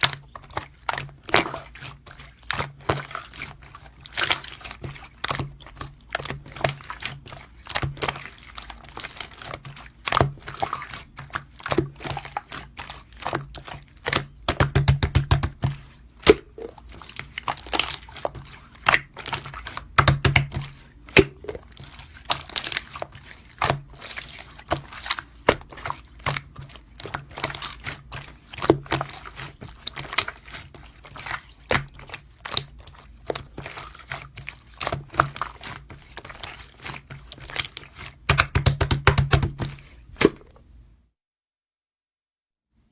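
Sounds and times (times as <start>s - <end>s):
slime crackling and popping: 16.2s - 39.6s.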